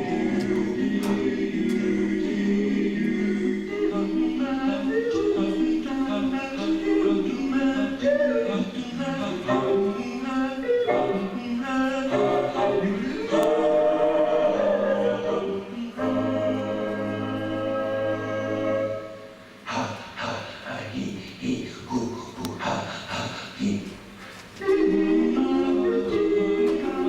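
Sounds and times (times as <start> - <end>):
choir-like singing music: 0.0 - 21.0, 24.5 - 27.0.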